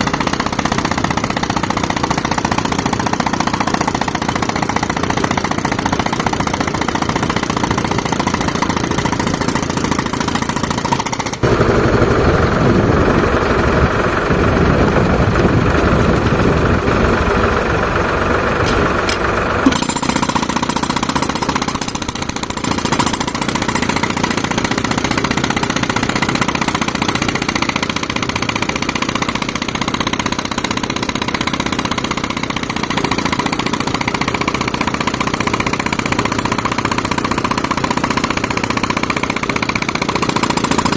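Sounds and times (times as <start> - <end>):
tractor engine running: 0.0 - 40.9.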